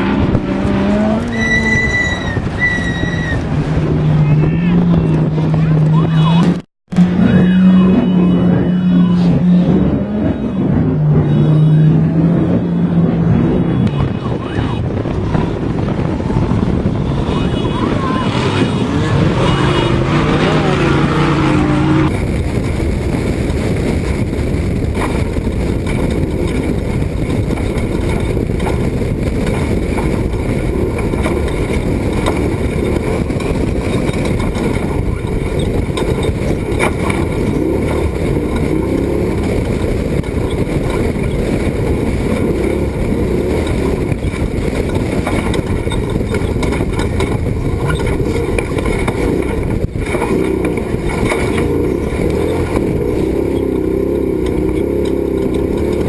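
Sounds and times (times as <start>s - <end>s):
truck engine rumbling: 0.0s - 56.0s
rattles and knocks: 24.7s - 56.0s.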